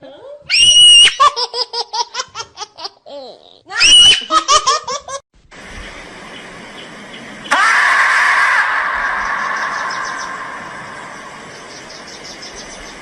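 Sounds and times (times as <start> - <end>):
background noise: 0.0 - 13.0
high-pitched laughter: 1.0 - 5.2.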